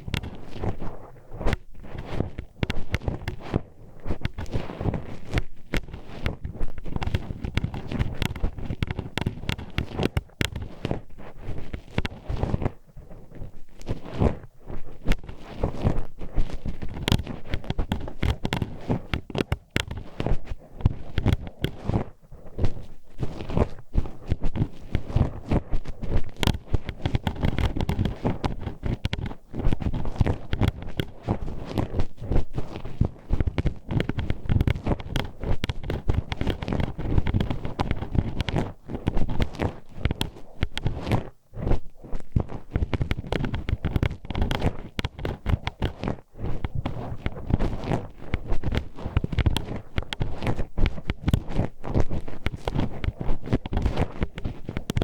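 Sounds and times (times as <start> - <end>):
hairpin clicking on microphone: 42.2 - 55.0.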